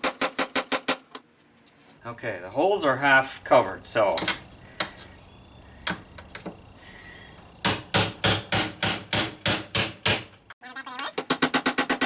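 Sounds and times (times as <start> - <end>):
hammer striking metal: 7.6 - 10.4.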